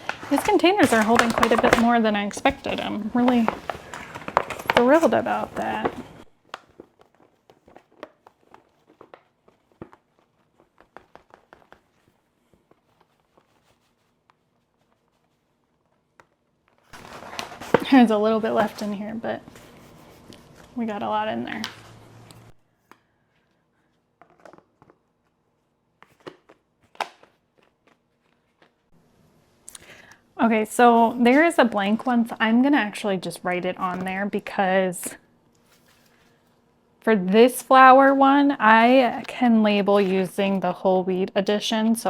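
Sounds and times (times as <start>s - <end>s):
containers knocking and clicking: 0.0s - 6.8s.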